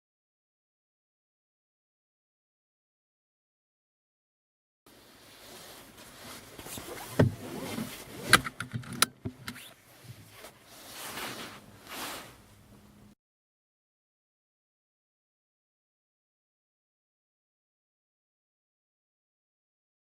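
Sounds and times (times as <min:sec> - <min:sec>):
seat belt webbing rustling: 0:04.9 - 0:12.5
seat belt buckle clicks: 0:07.0 - 0:09.8.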